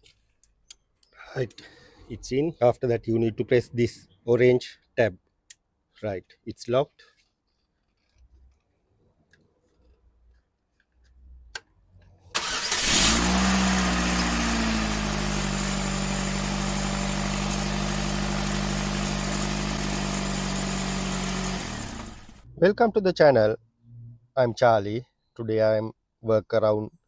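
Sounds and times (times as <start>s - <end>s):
car engine starting and idling: 12.3s - 22.5s.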